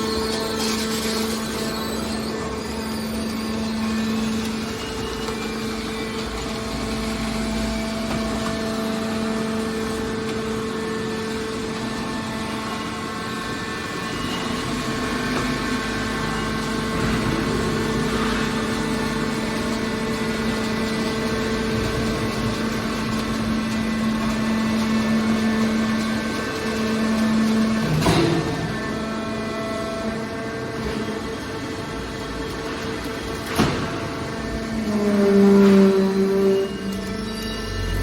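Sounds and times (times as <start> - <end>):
hydraulic motor and pump humming: 0.0 - 38.0.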